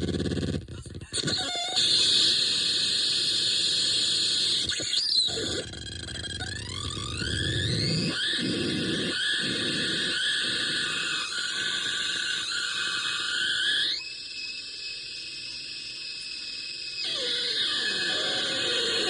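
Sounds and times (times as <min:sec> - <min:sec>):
high squealing tones: 0:01.2 - 0:19.0.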